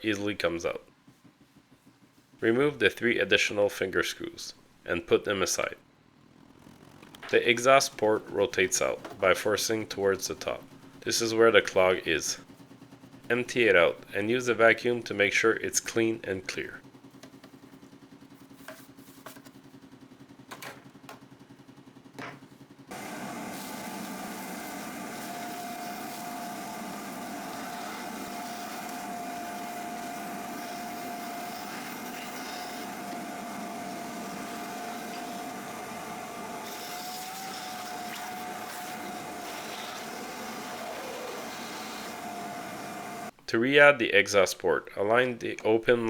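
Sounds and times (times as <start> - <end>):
vacuum cleaner running: 22.9 - 43.4.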